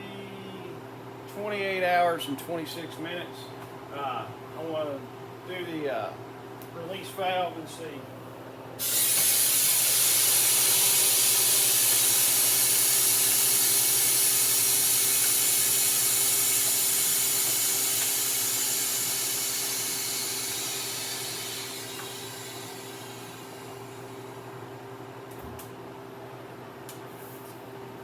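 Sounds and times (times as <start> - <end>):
air hissing into vacuum chamber: 8.8 - 24.6
machine humming: 8.8 - 25.7.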